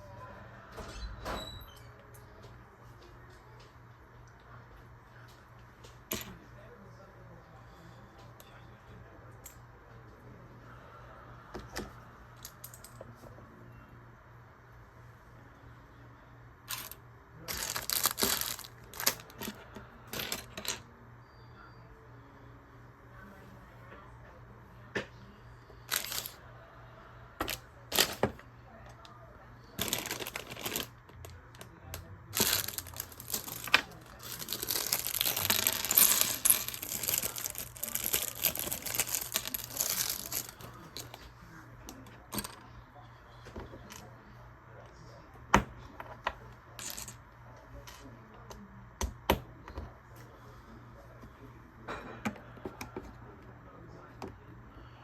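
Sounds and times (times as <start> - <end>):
plastic bag crinkling: 16.7 - 19.6, 25.9 - 26.4, 29.8 - 30.9, 32.4 - 41.2
plastic pieces clicking: 16.7 - 19.6, 25.9 - 26.4, 32.4 - 41.1.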